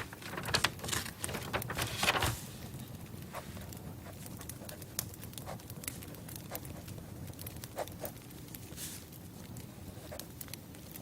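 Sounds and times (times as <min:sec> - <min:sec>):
campfire crackling: 0:00.0 - 0:11.0
fire hissing: 0:02.3 - 0:11.0.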